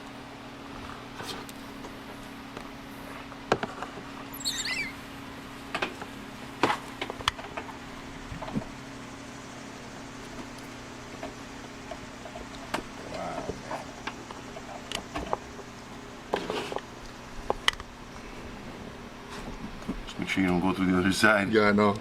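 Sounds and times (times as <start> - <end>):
short high squeak: 4.3 - 5.1.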